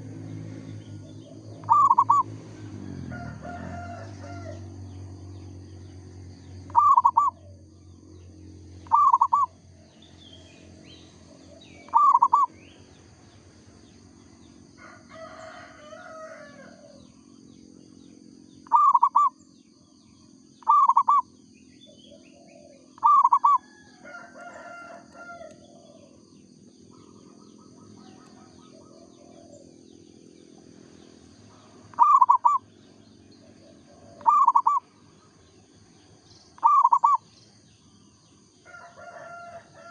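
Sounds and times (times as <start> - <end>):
steady low hum: 0.0 - 15.1
faint bird calls: 0.6 - 4.6, 5.8 - 35.7, 36.3 - 39.9
dove cooing: 0.9 - 4.6, 6.7 - 7.7, 8.8 - 9.6, 11.1 - 12.6, 16.1 - 17.3, 18.6 - 19.4, 20.6 - 26.3, 26.9 - 30.0, 31.5 - 32.7, 33.4 - 35.0, 36.6 - 37.3.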